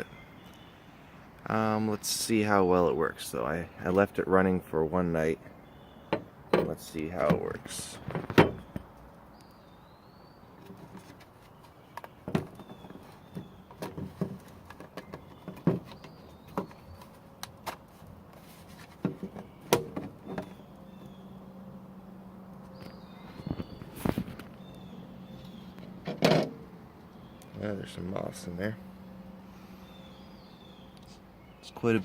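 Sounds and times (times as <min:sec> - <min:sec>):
birds chirping faintly: 0:00.0 - 0:32.0.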